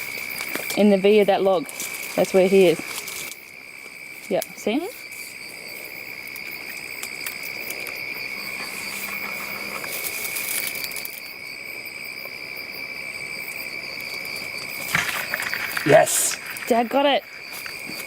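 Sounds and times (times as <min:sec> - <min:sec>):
night insects trilling: 0:00.0 - 0:18.0.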